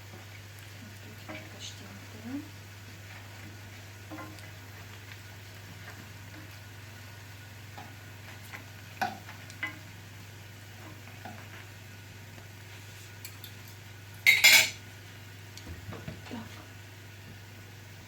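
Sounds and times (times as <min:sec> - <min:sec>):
food sizzling in a frying pan: 0:00.0 - 0:18.0
metal clatter on pan: 0:14.3 - 0:14.8.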